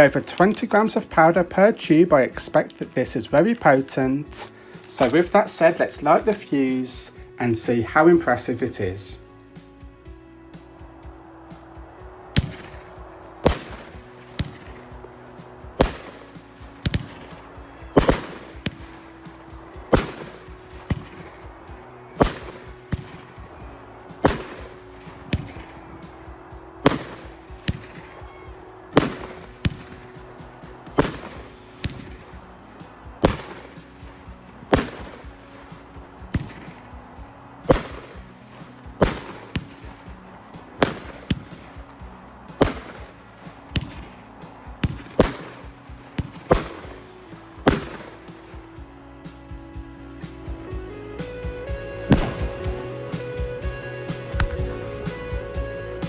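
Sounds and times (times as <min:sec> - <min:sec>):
firework launches and bangs: 0:13.4 - 0:14.8, 0:15.8 - 0:16.2, 0:18.0 - 0:18.8, 0:19.9 - 0:21.2, 0:22.2 - 0:23.2, 0:24.2 - 0:24.7, 0:26.8 - 0:27.9, 0:30.9 - 0:32.2, 0:33.2 - 0:33.8, 0:34.7 - 0:35.3, 0:37.7 - 0:38.2, 0:39.0 - 0:39.7, 0:52.1 - 0:52.8.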